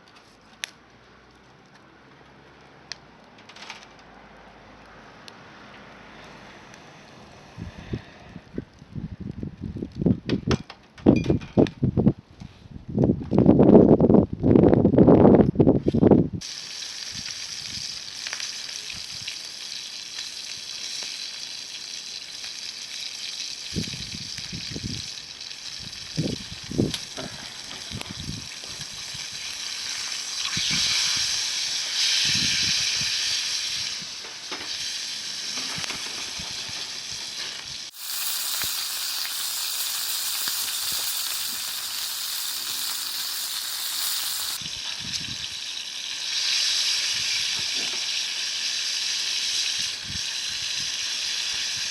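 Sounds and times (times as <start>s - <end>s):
campfire sizzling hiss: 16.4s - 51.9s.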